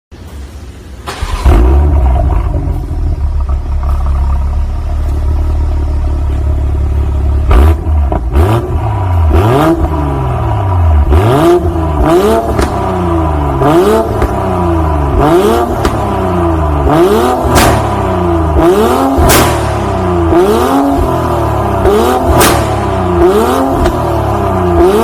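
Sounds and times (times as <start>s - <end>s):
car engine starting and idling: 0.1s - 25.0s
engine revving: 1.1s - 6.4s, 7.0s - 25.0s
exhaust pops: 12.4s - 13.0s, 14.1s - 14.6s, 15.6s - 16.3s, 17.3s - 20.4s, 21.0s - 24.3s.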